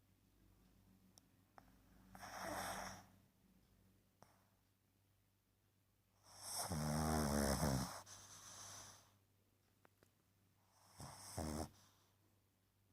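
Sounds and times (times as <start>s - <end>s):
woman snoring: 6.4s - 8.0s, 11.0s - 11.8s.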